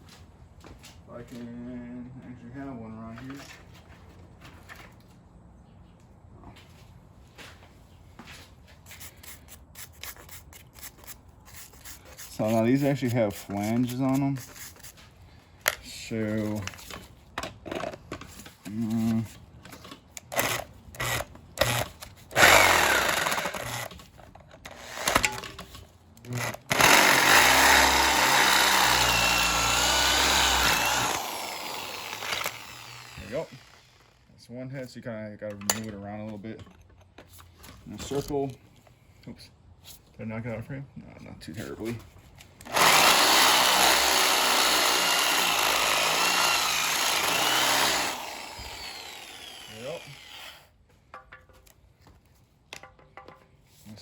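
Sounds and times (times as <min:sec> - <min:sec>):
electric drill boring into steel: 0:22.4 - 0:23.9, 0:26.4 - 0:34.2, 0:42.7 - 0:50.7.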